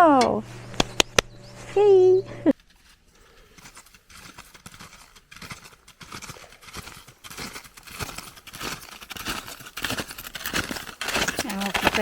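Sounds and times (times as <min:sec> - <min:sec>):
footsteps crunching in snow: 0:02.5 - 0:12.0.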